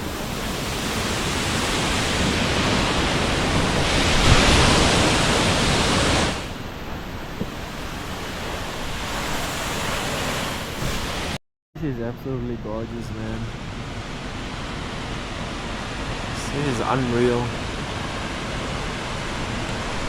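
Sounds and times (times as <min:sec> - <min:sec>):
waterfall roaring: 0:14.2 - 0:20.0.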